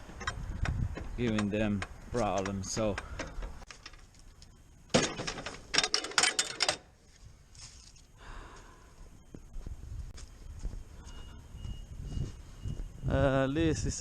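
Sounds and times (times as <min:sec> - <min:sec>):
sharp clanks: 0:04.9 - 0:06.9
hard objects clattering and clinking: 0:05.0 - 0:06.9.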